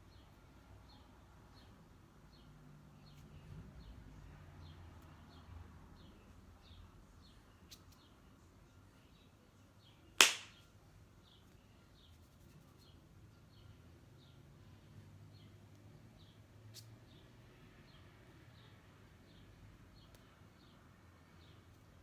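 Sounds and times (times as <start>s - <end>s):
sharp crack: 10.2s - 10.6s.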